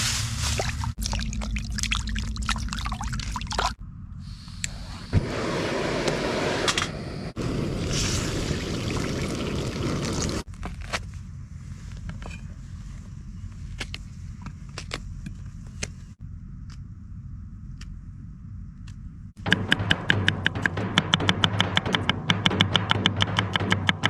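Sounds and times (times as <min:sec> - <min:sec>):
water pouring and trickling: 0:00.4 - 0:03.8, 0:07.8 - 0:10.5.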